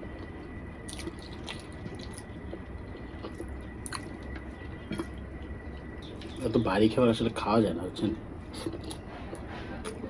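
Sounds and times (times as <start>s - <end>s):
man chewing food: 0.0s - 6.4s, 8.4s - 10.0s.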